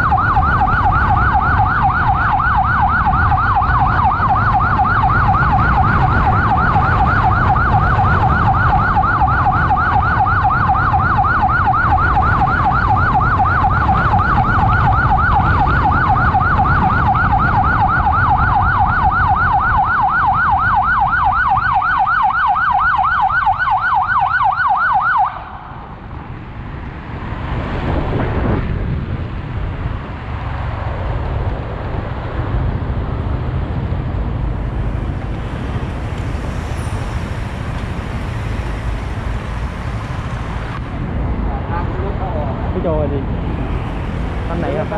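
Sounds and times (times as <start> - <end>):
siren yelping: 0.0 - 25.8, 43.3 - 44.9
engine: 0.0 - 44.9
road traffic: 0.0 - 44.9.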